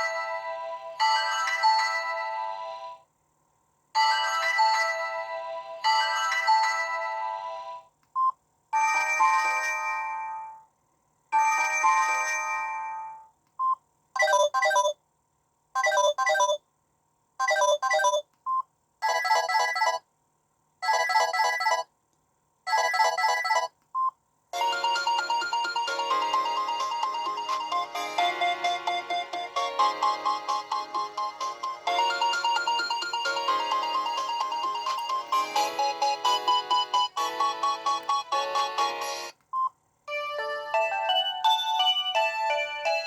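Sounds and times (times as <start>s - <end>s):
mobile phone polyphonic tones: 24.6s - 43.0s.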